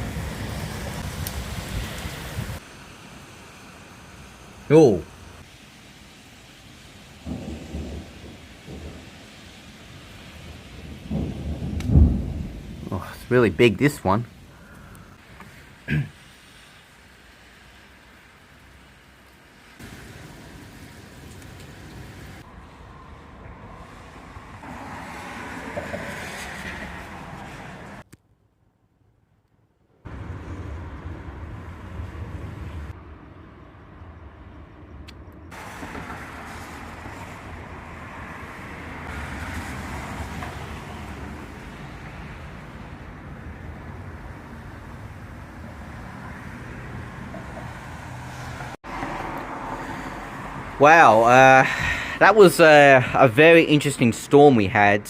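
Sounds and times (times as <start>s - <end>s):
wind: 0.0s - 55.0s
rumble of thunder: 7.2s - 13.3s.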